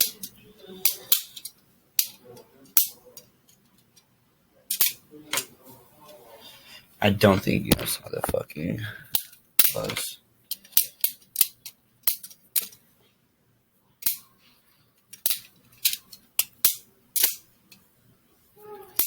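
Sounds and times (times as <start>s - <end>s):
plastic toy knife clacking: 0.0s - 2.2s, 4.7s - 5.5s, 15.2s - 17.4s.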